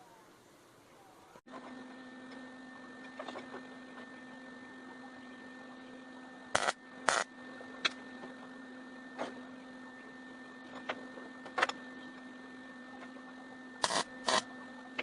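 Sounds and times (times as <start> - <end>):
steady electrical hum: 0.0 - 15.0
tack welds: 6.6 - 8.0, 13.8 - 14.5.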